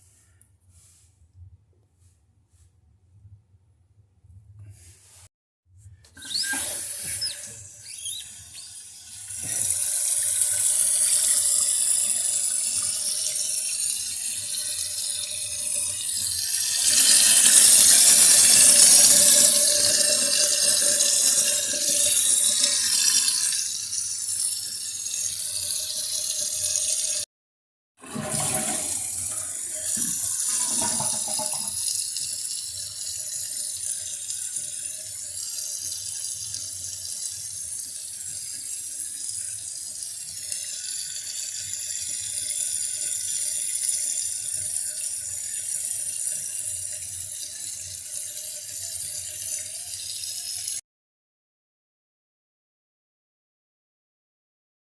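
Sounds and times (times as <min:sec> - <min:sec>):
toilet tank filling with water: 0:06.2 - 0:27.2, 0:28.0 - 0:50.8.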